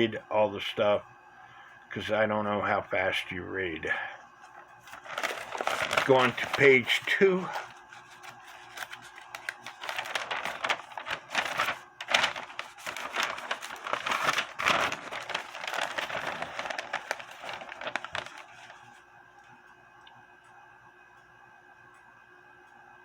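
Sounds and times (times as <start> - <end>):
paper rustling and crinkling: 4.5 - 19.5.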